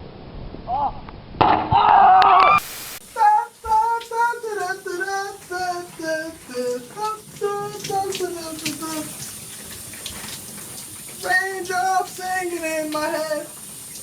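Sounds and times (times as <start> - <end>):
child singing: 3.2 - 9.1, 11.2 - 13.5.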